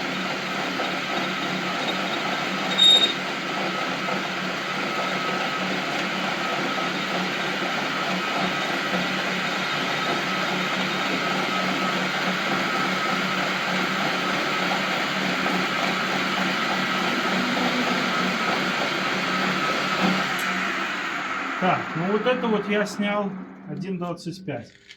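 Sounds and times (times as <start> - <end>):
lathe high whine: 0.0 - 24.6
low machine hum: 14.3 - 24.9.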